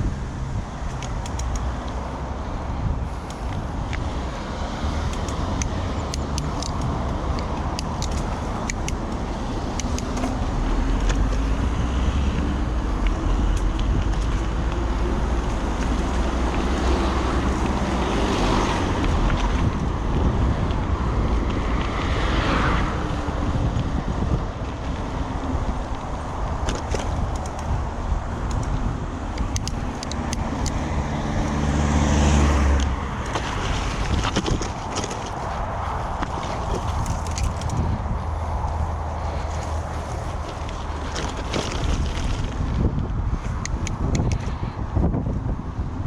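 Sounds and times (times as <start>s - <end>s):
wind on microphone: 0.0s - 46.0s
motor vehicle passing: 1.4s - 44.6s.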